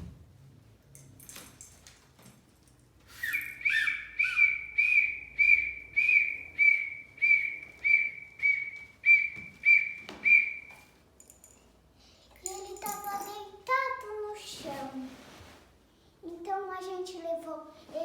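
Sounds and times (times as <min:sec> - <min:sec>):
short high chirps: 0:03.1 - 0:10.8.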